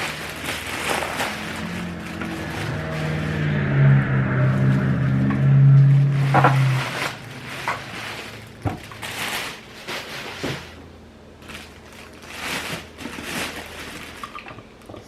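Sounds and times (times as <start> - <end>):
packaging rustling: 0.0 - 3.2, 6.6 - 10.8, 11.4 - 14.6.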